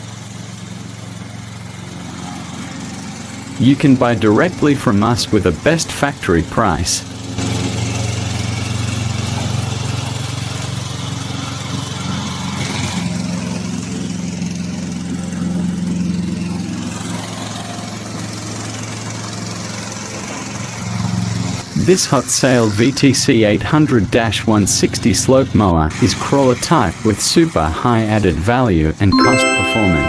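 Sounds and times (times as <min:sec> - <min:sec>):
mower engine running: 0:00.0 - 0:27.6.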